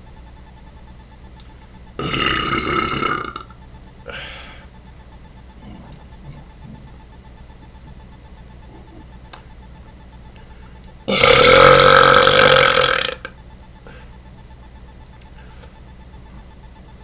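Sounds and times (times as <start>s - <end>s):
long loud burp: 2.0s - 3.6s, 11.1s - 13.3s.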